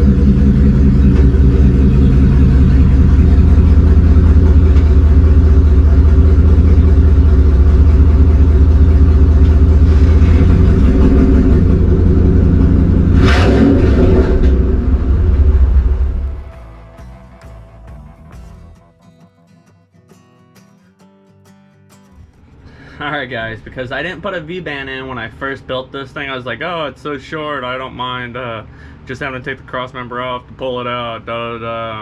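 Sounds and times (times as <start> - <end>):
engine running loud through exhaust: 0.0 - 19.0.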